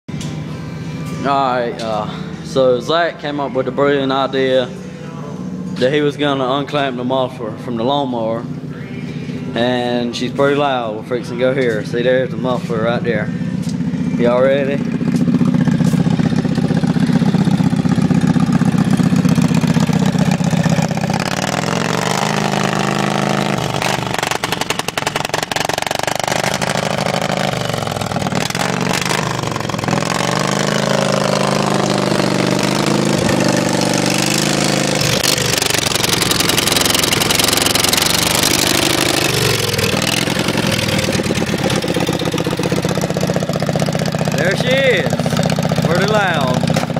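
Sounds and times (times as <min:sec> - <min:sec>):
lawn mower engine revving: 0:13.0 - 0:46.9.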